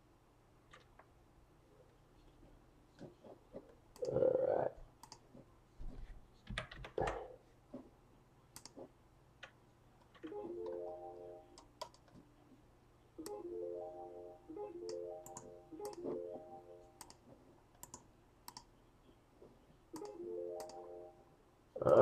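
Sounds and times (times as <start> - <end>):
faint clicks and taps: 1.9 - 4.1, 4.8 - 10.8.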